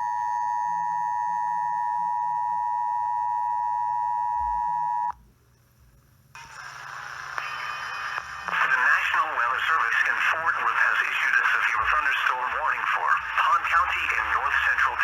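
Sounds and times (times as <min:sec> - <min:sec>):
broadcast alert audio: 0:08.4 - 0:15.0.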